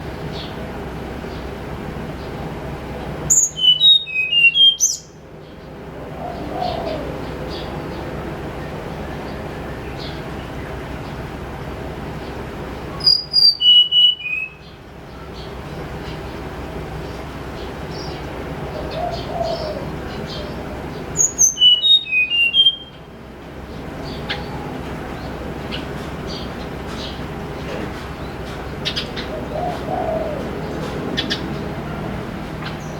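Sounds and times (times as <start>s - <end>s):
songbird whistling: 3.3s - 5.2s, 13.0s - 14.8s, 21.2s - 23.1s.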